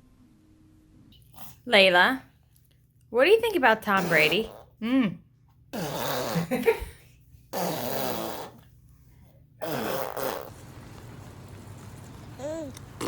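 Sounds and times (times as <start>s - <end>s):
baby farting: 3.9s - 4.8s, 5.7s - 6.7s, 7.5s - 8.7s, 9.6s - 10.6s.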